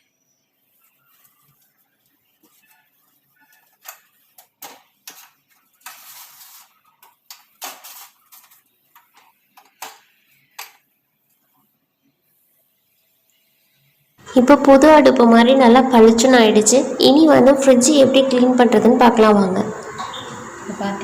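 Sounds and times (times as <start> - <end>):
cloth wiping a stove top: 0.7 - 10.5.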